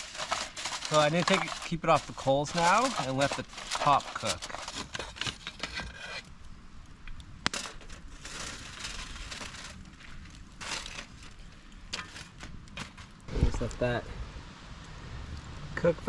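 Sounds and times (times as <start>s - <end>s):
rustles and small clicks: 0.0s - 6.0s, 7.0s - 13.8s
campfire crackling: 0.0s - 16.0s.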